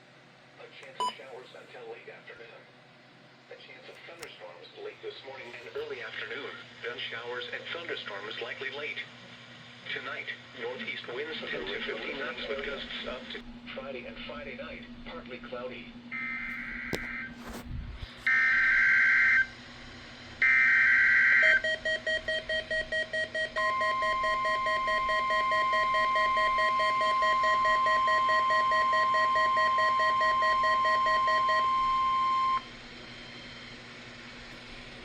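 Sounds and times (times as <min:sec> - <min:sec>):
steady warning alarm tone: 0:18.3 - 0:19.5, 0:20.4 - 0:32.7.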